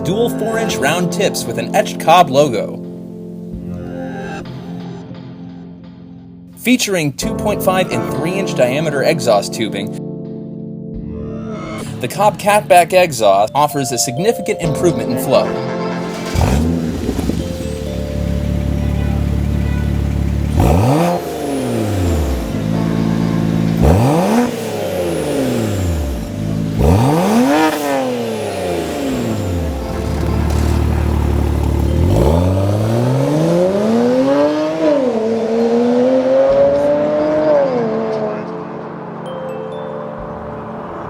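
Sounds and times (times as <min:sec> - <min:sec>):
car engine revving: 0:15.9 - 0:39.2.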